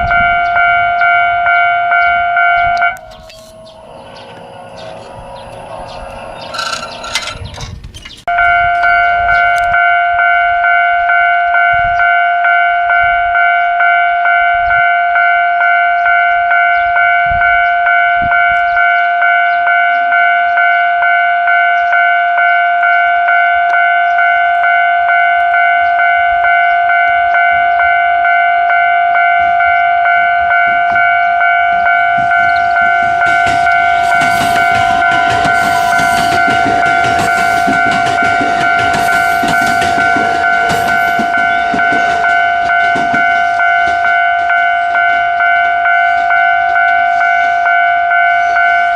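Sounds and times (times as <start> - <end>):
level-crossing warning bell ringing: 0.0 - 7.6, 8.3 - 48.9
approaching train rumble: 0.0 - 10.7, 25.3 - 48.9.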